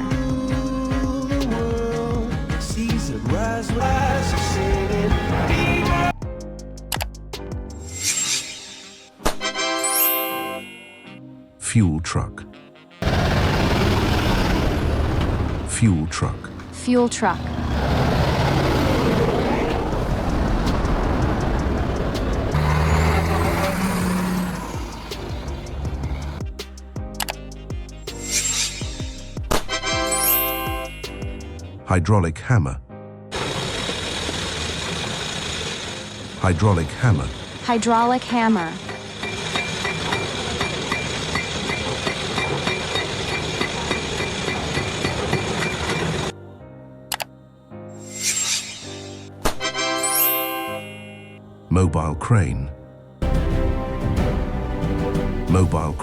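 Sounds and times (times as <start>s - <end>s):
hydraulic hammer pounding: 13.0s - 19.2s, 38.9s - 46.0s
truck engine running: 13.0s - 26.4s, 33.4s - 36.4s.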